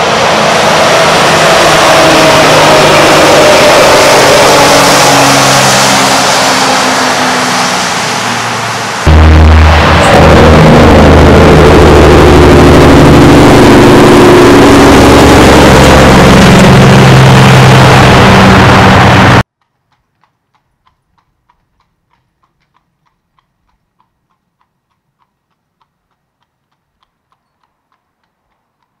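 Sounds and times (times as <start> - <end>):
truck diesel engine running: 0.0 - 19.5
faint ticking: 19.6 - 29.0.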